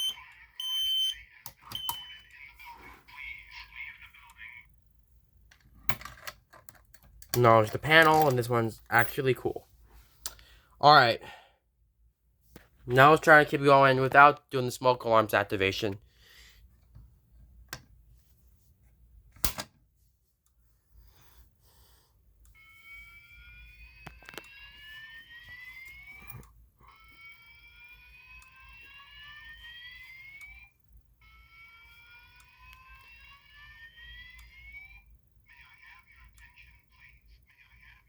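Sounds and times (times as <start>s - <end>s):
fire alarm whoop tone: 0.0s - 2.3s.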